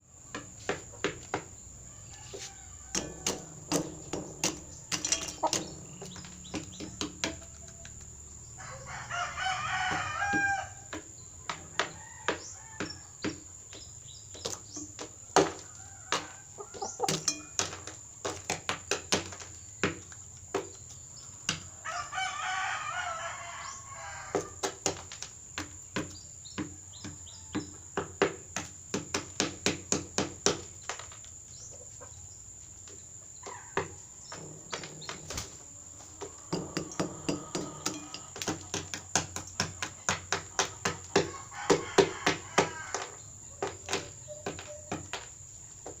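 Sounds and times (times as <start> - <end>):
rooster crowing: 1.8 - 3.9, 7.4 - 10.9, 21.8 - 24.6, 36.3 - 38.4, 41.1 - 45.0.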